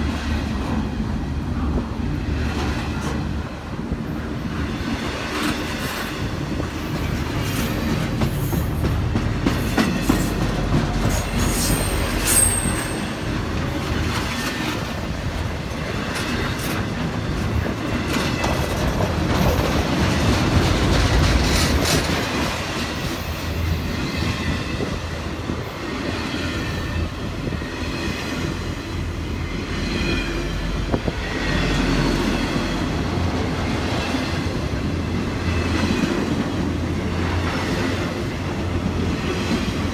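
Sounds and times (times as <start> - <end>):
train wheels clacking over rail joints: 4.8 - 28.6
train wheels squealing: 11.0 - 13.4.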